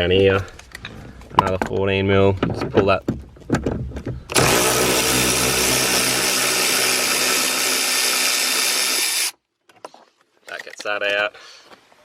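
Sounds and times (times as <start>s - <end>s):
cordless power tool spinning bolt: 4.3s - 9.3s.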